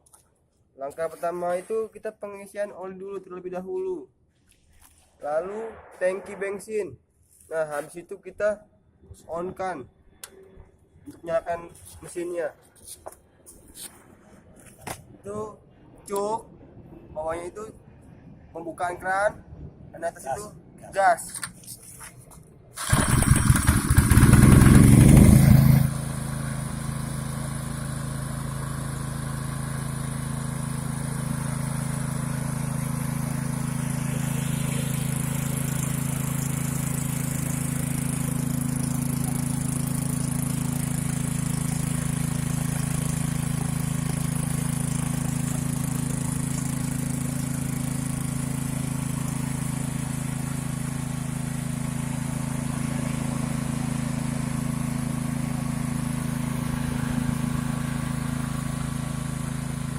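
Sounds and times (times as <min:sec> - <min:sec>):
petrol engine starting and running: 0:22.7 - 0:59.9.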